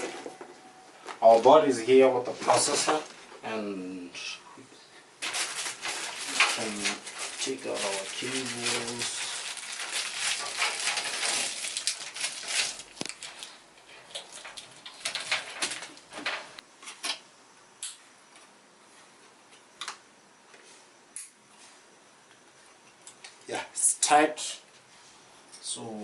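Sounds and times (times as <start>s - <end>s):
rustling handling noise: 0.0s - 3.4s, 5.2s - 16.6s.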